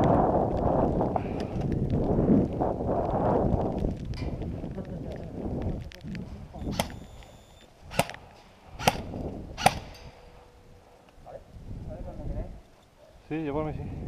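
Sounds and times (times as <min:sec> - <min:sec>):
airsoft gun shots: 0:06.6 - 0:08.2, 0:08.8 - 0:10.1.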